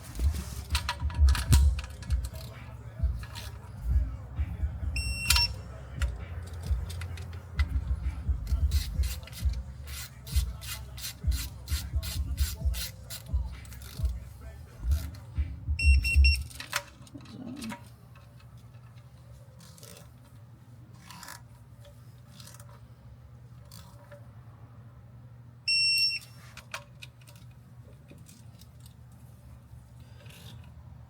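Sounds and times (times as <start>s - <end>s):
wrench clicking on bolts: 0.7s - 3.7s, 5.0s - 20.1s
torque wrench high beep: 5.0s - 5.6s, 15.8s - 16.6s, 25.7s - 26.3s.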